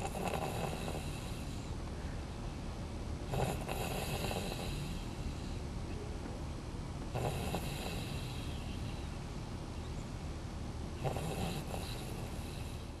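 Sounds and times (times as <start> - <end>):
man snoring: 0.0 - 1.5, 3.3 - 5.1, 7.1 - 8.5, 11.0 - 12.9.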